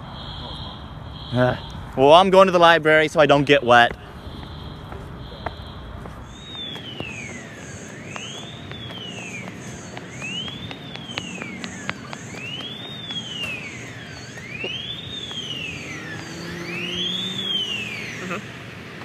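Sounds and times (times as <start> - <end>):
siren wailing: 0.0 - 19.0
high-pitched beeps: 4.0 - 18.5.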